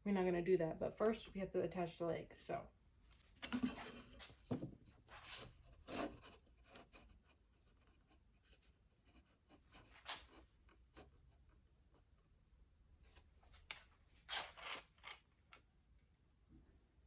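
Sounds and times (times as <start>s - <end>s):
wooden workpieces handled: 3.1s - 10.9s.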